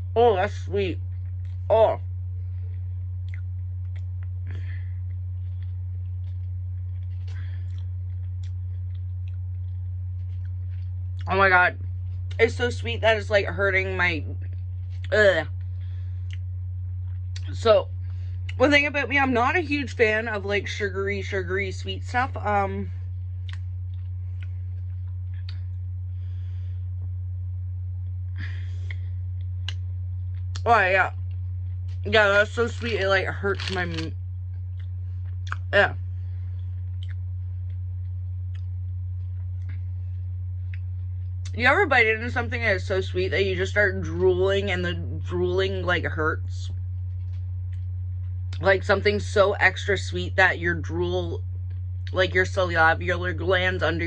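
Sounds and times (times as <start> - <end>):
steady low hum: 0.0 - 54.0
person chewing: 2.6 - 11.3, 23.4 - 25.9, 33.6 - 35.7, 36.5 - 41.4
soft breath: 26.0 - 27.0.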